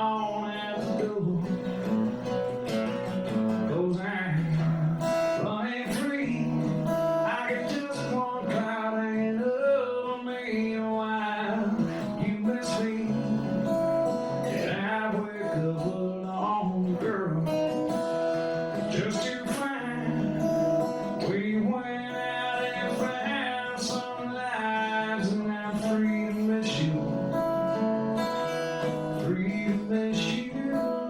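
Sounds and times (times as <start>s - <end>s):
man singing: 0.0s - 31.0s
strummed acoustic guitar: 0.0s - 31.0s.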